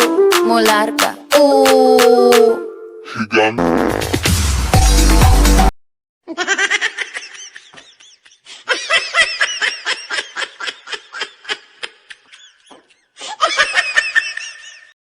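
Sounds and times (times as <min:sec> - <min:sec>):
high-pitched laughter: 0:06.3 - 0:15.0.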